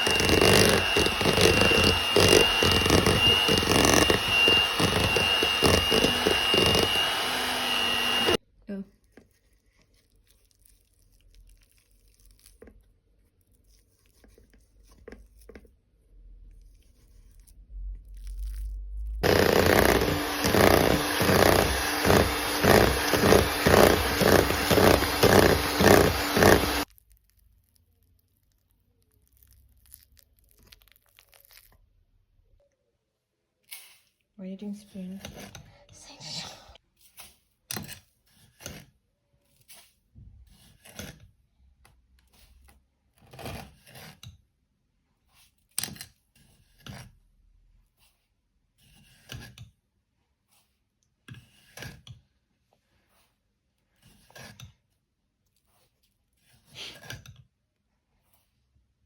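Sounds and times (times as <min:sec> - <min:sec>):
electric mixer motor whine: 0:00.0 - 0:08.4, 0:19.2 - 0:26.9.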